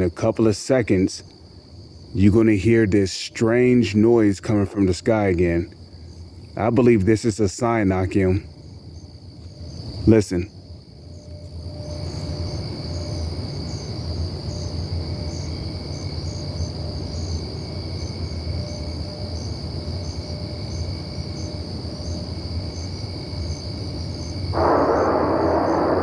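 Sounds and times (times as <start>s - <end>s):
insect chirping: 0.0s - 26.0s
insects trilling: 0.0s - 26.0s
deep rumbling roar: 24.6s - 26.0s.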